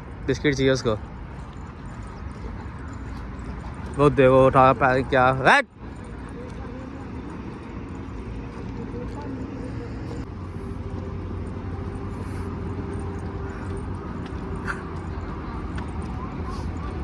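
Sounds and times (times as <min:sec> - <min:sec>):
faint distant voices: 0:00.3 - 0:17.0.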